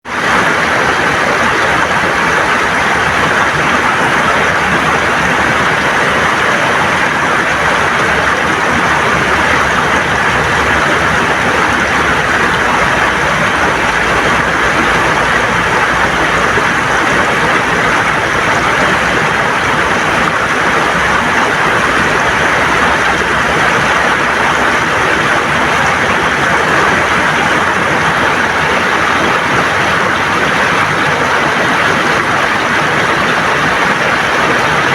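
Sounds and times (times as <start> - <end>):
river rushing over stones: 0.0 - 34.9.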